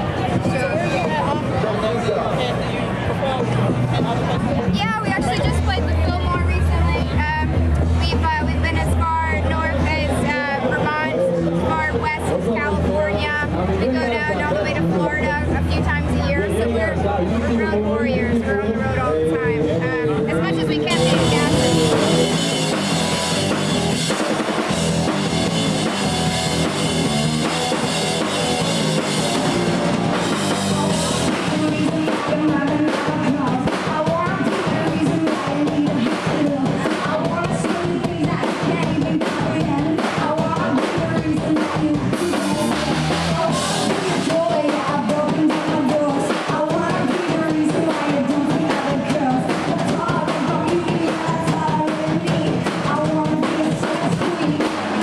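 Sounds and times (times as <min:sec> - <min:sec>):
bass and guitar: 0:00.0 - 0:55.0
drum kit steady beat: 0:03.0 - 0:55.0
woman singing: 0:20.3 - 0:22.0, 0:30.7 - 0:55.0.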